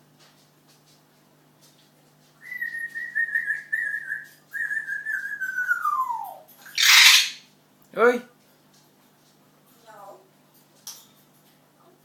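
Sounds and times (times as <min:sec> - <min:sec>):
parrot whistling: 0:02.4 - 0:07.4.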